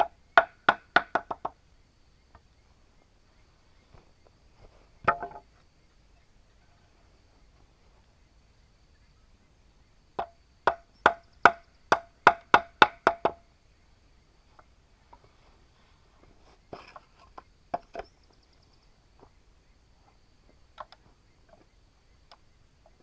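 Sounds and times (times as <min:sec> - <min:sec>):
hollow wooden knocks on bamboo: 0:00.0 - 0:01.6, 0:05.0 - 0:05.5, 0:10.2 - 0:13.4.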